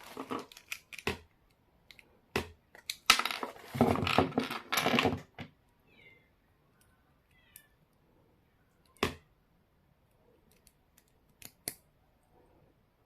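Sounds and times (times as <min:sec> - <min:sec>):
plastic parts clicking: 0:00.1 - 0:03.2.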